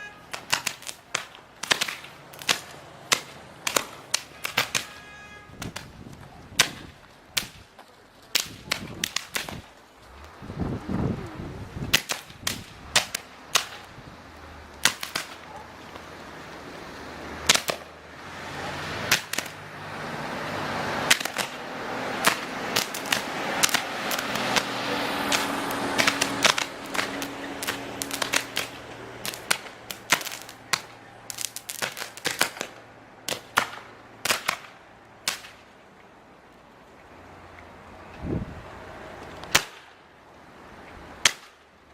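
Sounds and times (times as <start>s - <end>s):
power lines arcing with sharp cracks: 0.0s - 10.4s, 11.7s - 36.0s, 39.2s - 40.1s, 41.2s - 41.9s
rushing haze: 8.2s - 35.7s.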